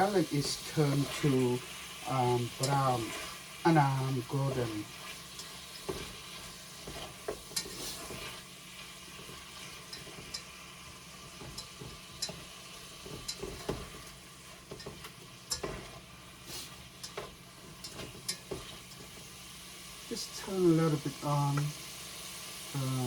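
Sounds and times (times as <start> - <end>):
shrimp sizzling in hot oil: 0.0 - 23.0
utensil scraping pan: 2.5 - 3.5, 4.6 - 8.5, 11.3 - 19.2.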